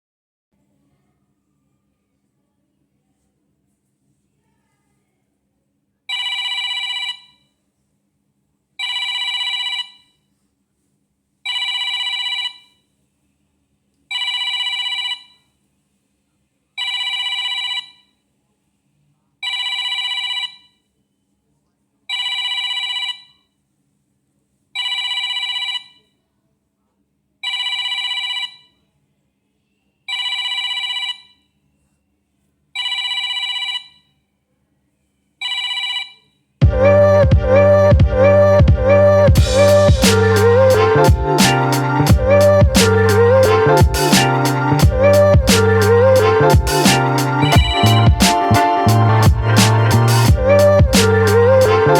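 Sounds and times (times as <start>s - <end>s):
phone ringtone: 6.1s - 7.4s, 8.8s - 10.1s, 11.5s - 12.8s, 14.1s - 15.4s, 16.8s - 18.0s, 19.5s - 20.7s, 22.1s - 23.4s, 24.8s - 26.0s, 27.4s - 28.7s, 30.1s - 31.5s, 32.8s - 34.1s, 35.4s - 36.3s, 45.1s - 51.6s.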